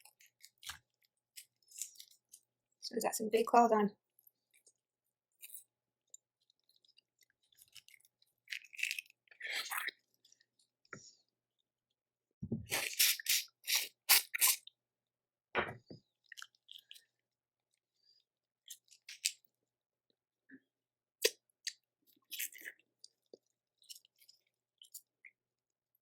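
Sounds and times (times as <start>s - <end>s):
chewing: 0.0s - 2.5s, 4.2s - 10.7s, 16.2s - 19.5s, 21.2s - 25.4s.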